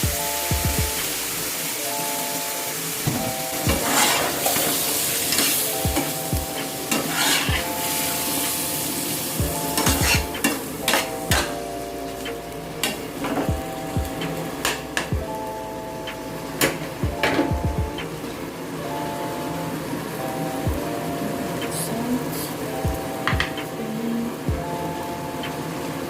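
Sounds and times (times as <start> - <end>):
food sizzling in a pan: 0.0 - 17.0, 18.1 - 26.0
utensil scraping a pan: 3.7 - 5.6, 6.9 - 8.2.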